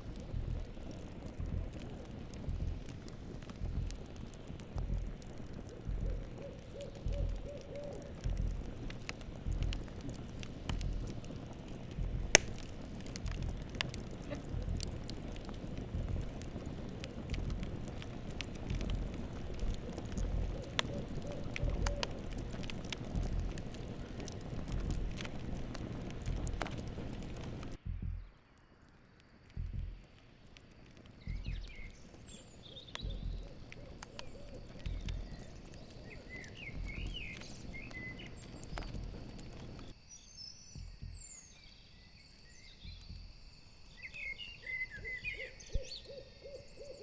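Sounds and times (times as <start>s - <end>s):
low pulsing rumble: 0.0s - 28.4s, 33.0s - 39.9s
campfire crackling and popping: 0.0s - 47.0s
owl hooting: 5.5s - 8.8s, 19.2s - 24.0s, 31.3s - 38.7s, 44.2s - 47.0s.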